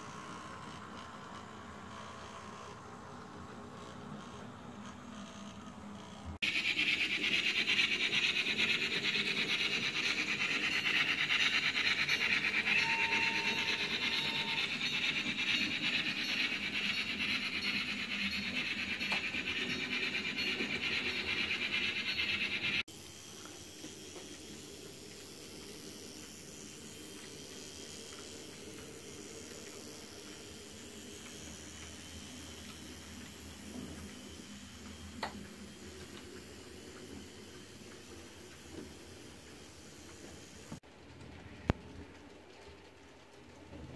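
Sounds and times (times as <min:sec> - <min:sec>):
model train wheels rattling: 0:03.8 - 0:22.8
faint steady tone: 0:12.4 - 0:16.0.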